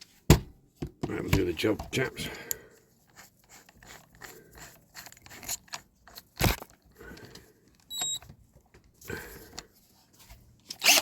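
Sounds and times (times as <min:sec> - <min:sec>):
small tools clicking and rustling: 0:02.2 - 0:08.2.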